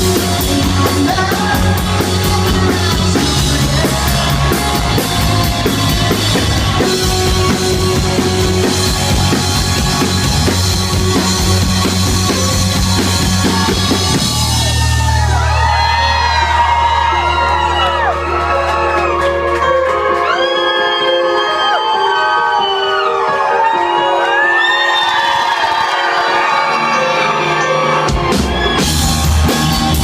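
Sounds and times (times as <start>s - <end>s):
drum kit: 0.0s - 21.7s, 28.0s - 30.0s
live rock band playing: 0.0s - 30.0s
audience whooping: 3.5s - 30.0s.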